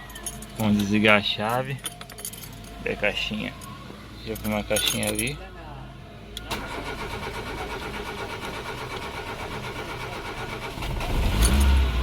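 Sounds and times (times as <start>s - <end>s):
starter motor cranking engine: 6.5s - 12.0s.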